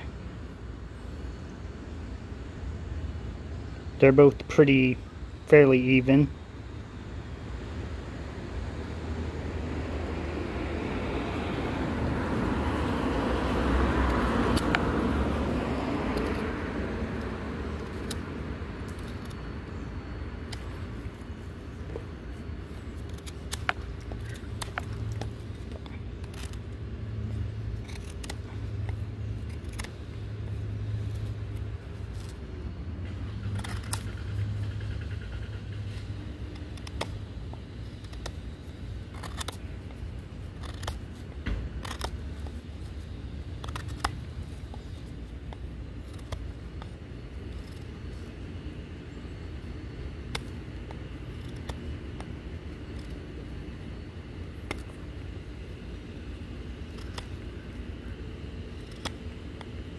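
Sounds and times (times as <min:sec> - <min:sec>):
steady low hum: 0:00.0 - 0:59.9
pocket knife clicks and snaps: 0:14.1 - 0:14.8, 0:17.2 - 0:18.2, 0:27.8 - 0:30.0, 0:33.5 - 0:34.4, 0:39.1 - 0:39.6, 0:41.8 - 0:42.6, 0:43.5 - 0:47.9, 0:50.2 - 0:53.3, 0:56.8 - 0:57.5.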